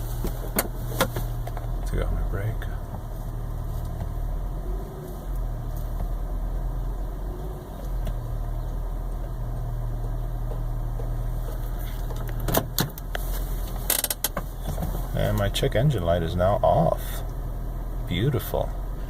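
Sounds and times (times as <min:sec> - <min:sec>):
car engine hum from cabin: 0:00.0 - 0:19.0
sharp clicks and knocks: 0:09.2 - 0:15.5.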